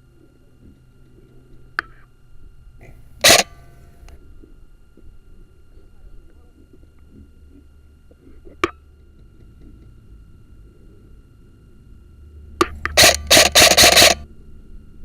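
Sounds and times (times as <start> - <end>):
airsoft gun shots: 3.2 - 3.7, 12.6 - 14.2.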